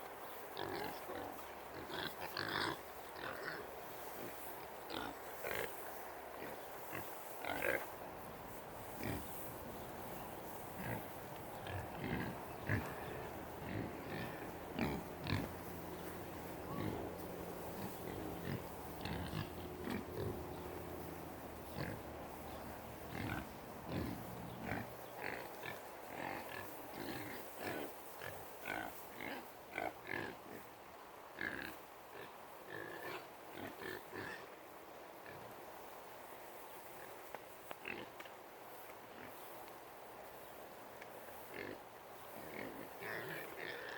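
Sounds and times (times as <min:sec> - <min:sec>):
hogs grunting: 0:08.8 - 0:09.5, 0:10.5 - 0:30.4, 0:41.5 - 0:43.9.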